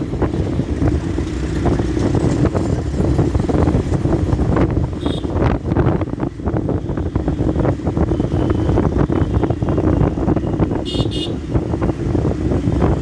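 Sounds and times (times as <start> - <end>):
motorcycle engine running: 0.0 - 13.0
horn toots: 4.9 - 5.5, 7.5 - 11.4.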